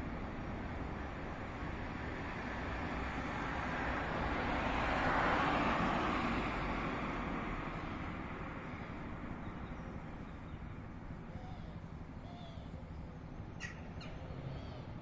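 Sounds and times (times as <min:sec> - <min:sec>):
street traffic hum: 0:00.0 - 0:15.0
faint bird calls: 0:11.2 - 0:15.0.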